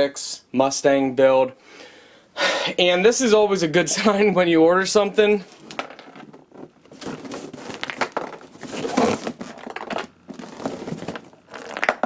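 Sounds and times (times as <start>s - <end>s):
packaging crinkling and rustling: 5.5s - 12.0s
loose pieces knocking inside box: 7.0s - 12.0s.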